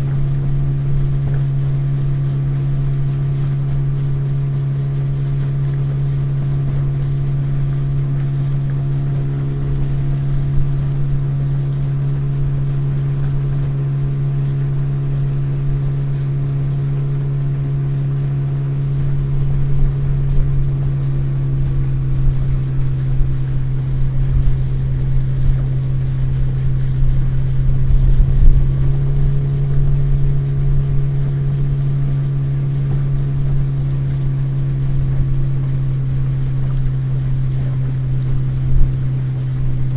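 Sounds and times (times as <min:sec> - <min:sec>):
boat hull thudding on waves: 0:00.0 - 0:39.9
motorboat engine running: 0:00.0 - 0:39.9.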